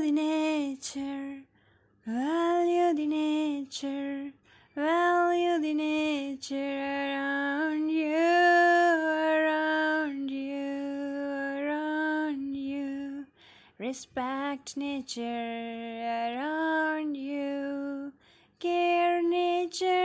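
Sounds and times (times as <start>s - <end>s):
woman singing unaccompanied: 0.0s - 20.0s
singer breathing: 13.4s - 13.8s.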